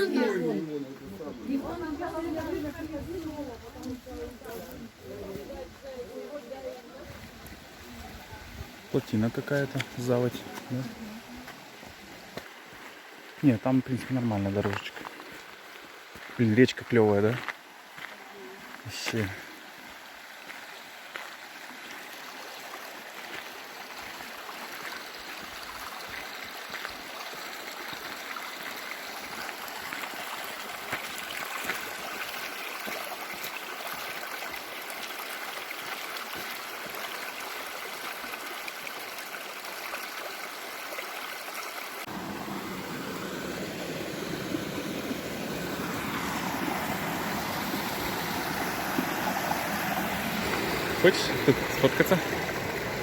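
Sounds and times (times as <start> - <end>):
stream rushing over rocks: 0.0 - 53.0.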